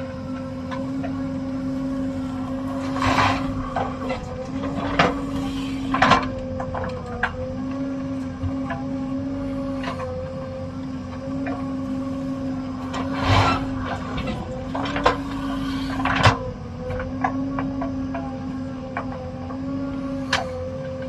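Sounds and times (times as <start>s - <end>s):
diesel engine running: 0.0s - 21.0s
machine clanks and knocks: 2.6s - 7.4s, 12.8s - 19.3s.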